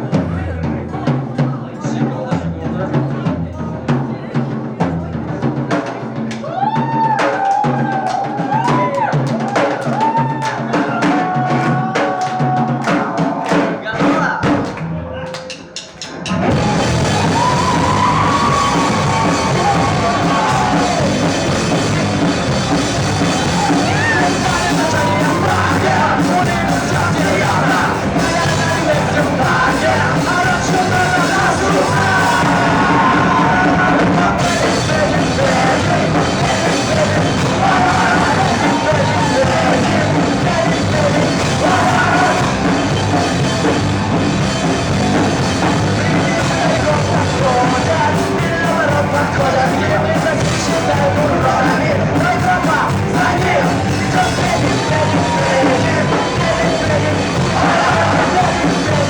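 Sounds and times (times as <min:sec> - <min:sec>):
live punk rock band: 0:00.0 - 0:59.0
person yelling and singing: 0:16.6 - 0:43.3, 0:45.6 - 0:59.0.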